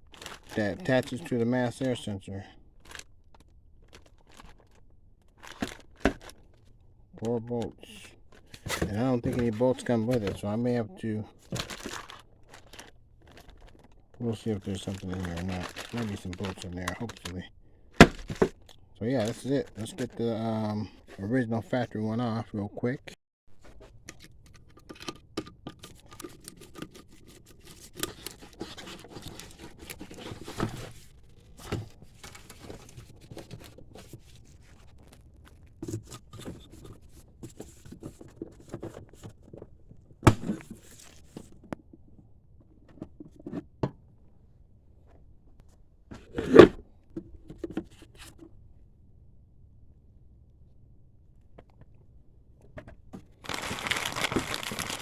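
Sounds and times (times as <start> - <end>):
packaging rustling and tearing: 0.0 - 1.4, 11.4 - 17.4, 27.0 - 35.8, 53.4 - 55.0.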